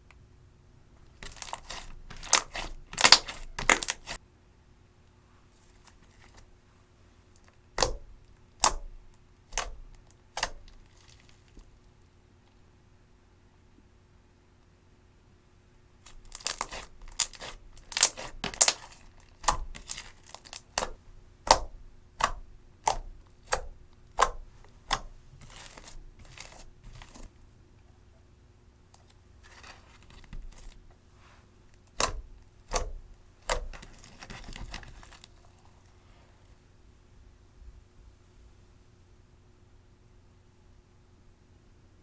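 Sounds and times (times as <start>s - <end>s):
slime crackling and popping: 1.2s - 4.2s, 7.8s - 11.7s, 16.0s - 27.3s, 31.8s - 35.4s.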